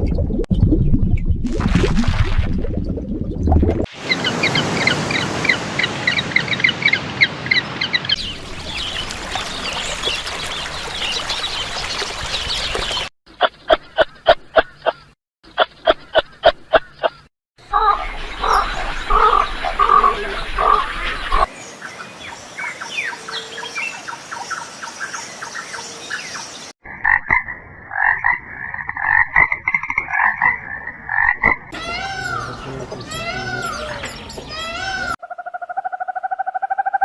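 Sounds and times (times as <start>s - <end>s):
chorus of pulsed calls: 31.8s - 35.2s.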